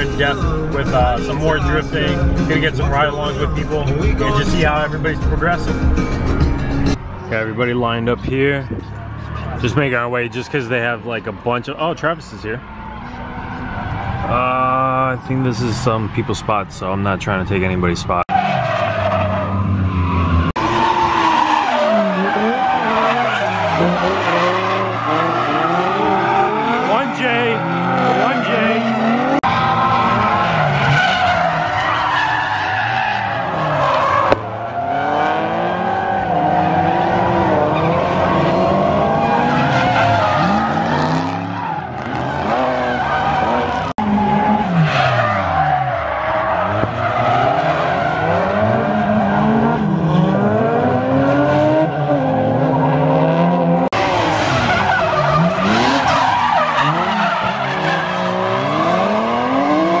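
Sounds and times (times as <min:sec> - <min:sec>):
car engines revving: 0:00.0 - 1:00.0
tyres squealing: 0:18.3 - 0:49.7, 0:54.0 - 1:00.0.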